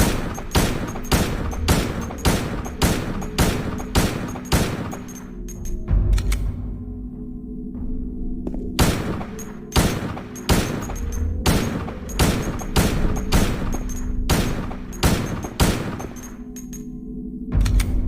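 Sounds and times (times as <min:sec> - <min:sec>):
pistol shots: 0:00.0 - 0:05.4, 0:08.8 - 0:16.4
low background drone: 0:00.0 - 0:18.0.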